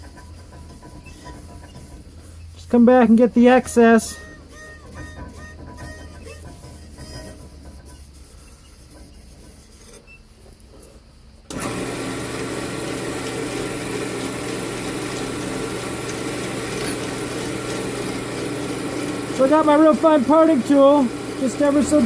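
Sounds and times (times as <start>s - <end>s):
wood lathe motor humming: 11.5s - 22.0s.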